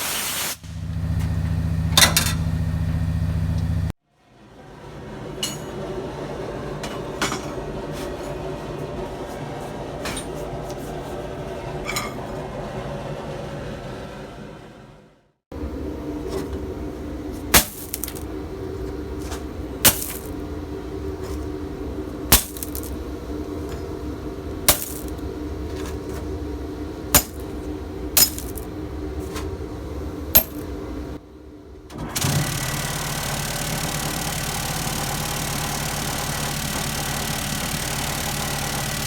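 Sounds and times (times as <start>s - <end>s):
steady motor hum: 0.6s - 4.0s, 15.5s - 39.0s.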